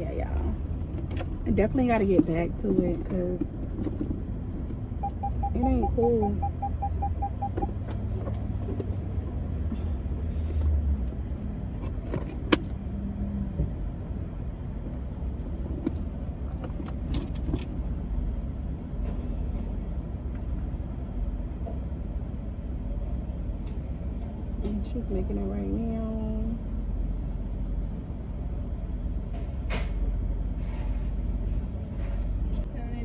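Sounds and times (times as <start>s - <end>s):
car engine idling: 0.0s - 12.8s
road rumble: 0.0s - 33.0s.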